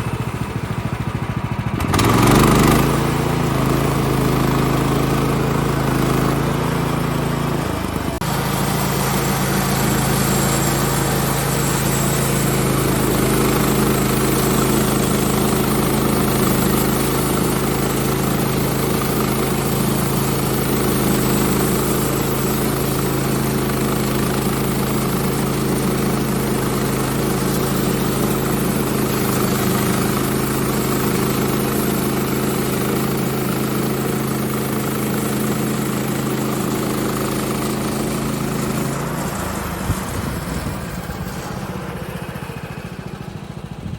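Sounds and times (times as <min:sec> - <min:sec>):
small gasoline engine running: 0:00.0 - 0:43.9
band blade cutting log: 0:08.2 - 0:18.1.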